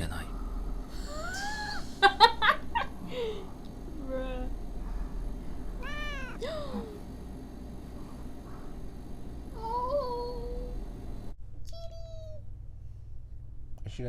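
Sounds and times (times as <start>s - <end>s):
cat meowing: 5.8s - 6.9s.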